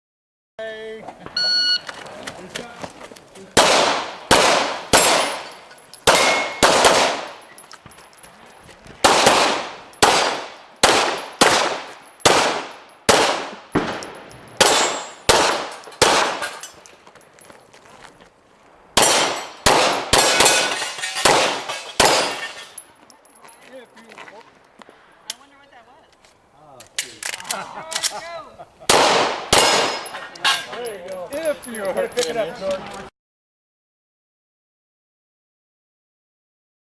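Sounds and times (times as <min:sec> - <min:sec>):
pistol shots echoing: 0:03.6 - 0:07.4, 0:09.0 - 0:16.6, 0:19.0 - 0:22.6, 0:28.9 - 0:30.1.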